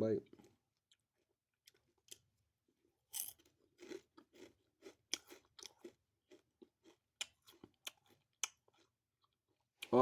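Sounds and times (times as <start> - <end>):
crunchy chewing: 3.1 - 9.9.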